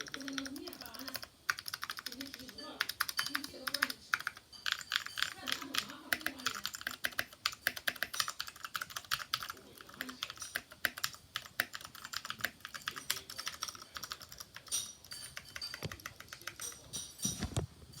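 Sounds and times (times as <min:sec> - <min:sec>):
fast typing on mechanical keyboard: 0:00.0 - 0:16.8.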